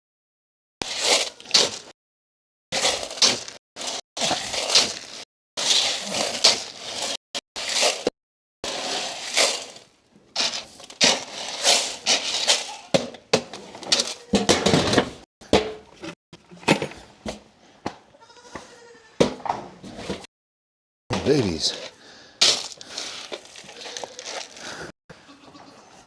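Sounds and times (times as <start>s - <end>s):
grain scooped in feed can: 0.8s - 1.9s, 2.8s - 12.9s, 21.3s - 24.9s
goats bleating: 18.1s - 19.2s.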